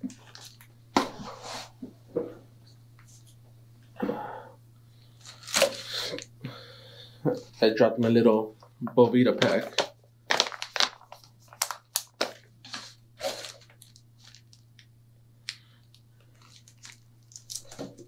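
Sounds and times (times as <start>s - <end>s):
packaging crinkling: 5.2s - 6.3s, 9.4s - 18.0s.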